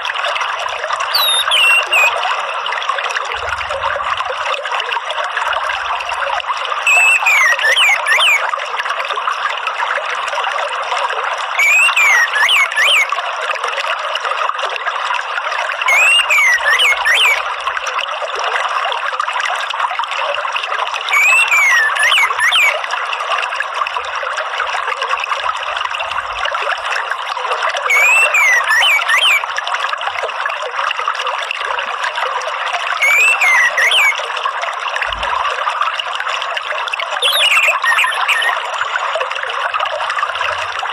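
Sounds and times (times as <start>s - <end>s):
trickling water: 0.0s - 40.9s
gliding bird call: 1.1s - 2.2s, 6.8s - 8.5s, 11.6s - 13.1s, 15.8s - 17.5s, 21.1s - 22.8s, 27.8s - 29.4s, 33.0s - 34.2s, 37.2s - 38.8s.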